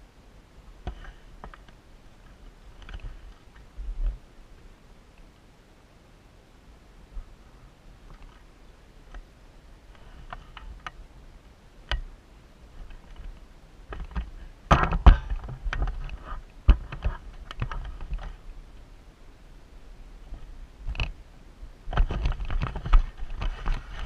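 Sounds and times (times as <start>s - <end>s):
sharp clicks and knocks: 12.8s - 18.4s.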